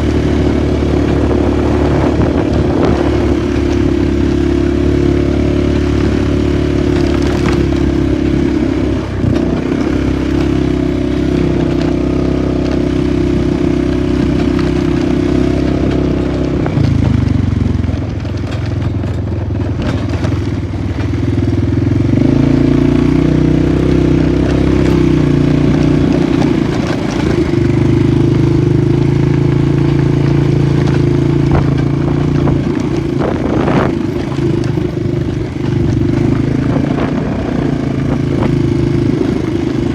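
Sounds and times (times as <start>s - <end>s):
atv engine running: 0.0s - 39.9s
knocks over rough ground: 0.1s - 11.9s, 24.4s - 39.9s.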